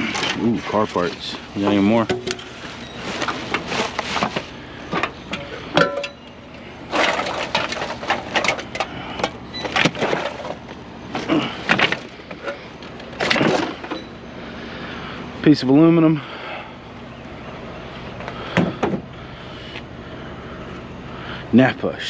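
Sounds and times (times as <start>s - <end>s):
metal car parts clanking: 0.0s - 14.4s.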